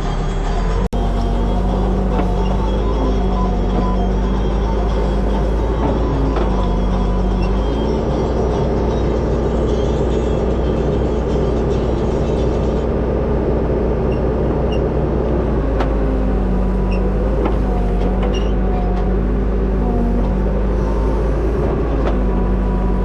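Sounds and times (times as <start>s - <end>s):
diesel engine droning: 0.0s - 23.0s.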